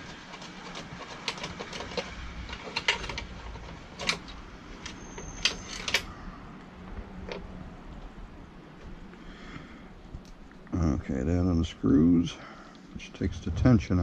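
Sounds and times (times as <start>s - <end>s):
high squeak: 4.9s - 6.0s.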